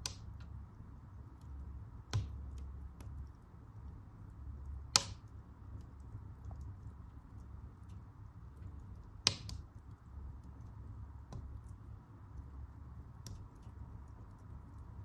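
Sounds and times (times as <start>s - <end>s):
loud pops from burning logs: 0.0s - 0.6s, 1.4s - 3.2s, 4.6s - 5.9s, 9.2s - 9.8s
fire crackling: 0.0s - 15.0s.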